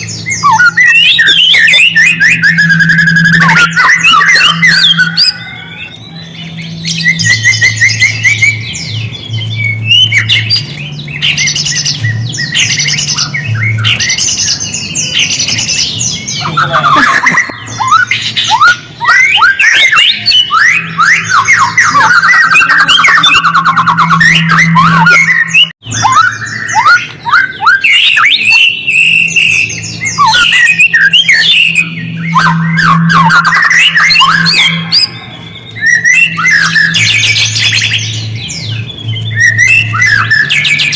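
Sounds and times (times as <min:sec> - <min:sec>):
steady low hum: 0:00.0 - 0:27.6
songbird singing trills and whistles: 0:00.0 - 0:40.9.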